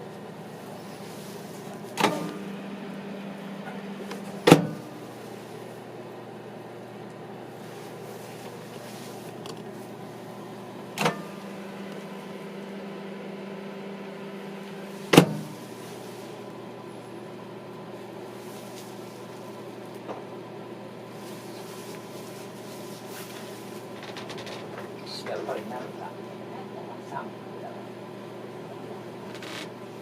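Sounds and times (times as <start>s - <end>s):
microwave oven humming: 0.0s - 30.0s
loud clunk: 2.0s - 2.5s, 3.6s - 4.9s, 11.0s - 11.4s, 15.1s - 15.6s.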